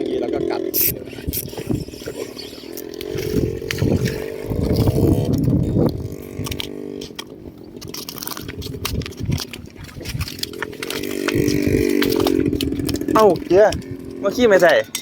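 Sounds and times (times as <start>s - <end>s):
small engine running: 0.0s - 7.3s, 10.2s - 14.8s
wind buffeting microphone: 0.0s - 15.0s.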